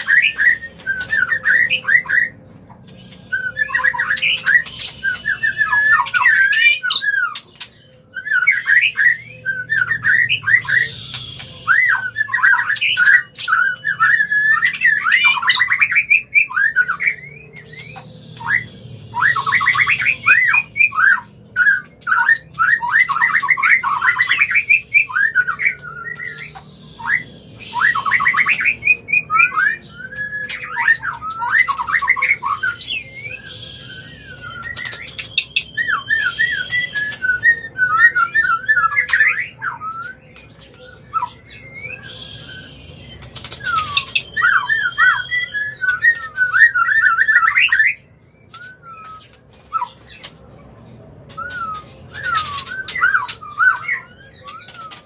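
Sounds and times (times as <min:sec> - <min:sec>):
harsh rasping bird notes: 0:00.0 - 0:40.2
bird whistled notes: 0:00.0 - 0:50.3, 0:51.3 - 0:55.0.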